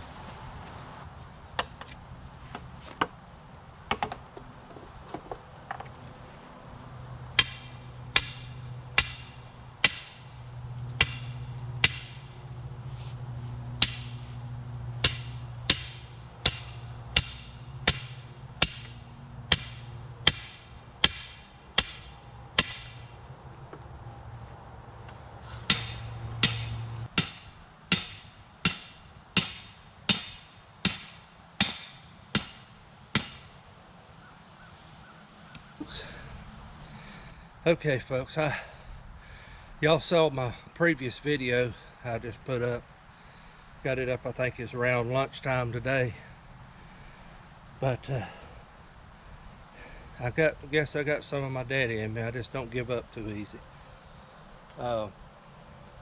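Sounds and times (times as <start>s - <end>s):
fence post being hammered: 7.4s - 10.3s, 11.0s - 12.4s, 13.8s - 14.3s, 15.0s - 23.1s, 25.6s - 33.6s.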